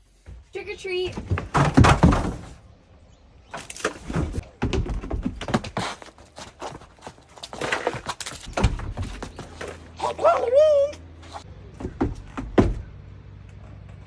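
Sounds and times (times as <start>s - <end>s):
thuds and knocks: 1.1s - 2.6s, 3.9s - 5.8s, 8.3s - 9.8s, 11.8s - 13.0s.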